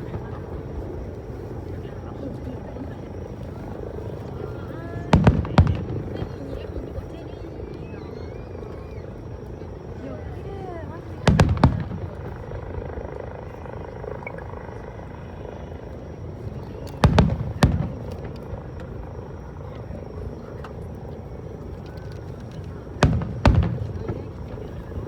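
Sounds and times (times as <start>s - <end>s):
crowd murmur: 0.0s - 25.0s
fireworks booming: 5.1s - 6.5s, 11.2s - 12.6s, 17.0s - 18.8s, 23.0s - 25.0s.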